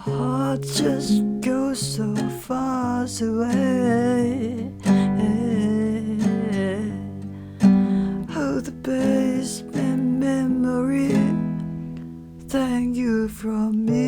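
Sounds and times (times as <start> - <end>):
acoustic guitar strumming: 0.0 - 14.0.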